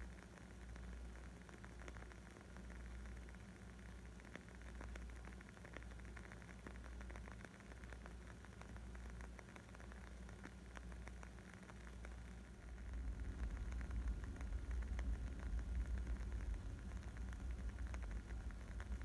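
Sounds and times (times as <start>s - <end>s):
wood fire crackling: 3.0s - 19.0s.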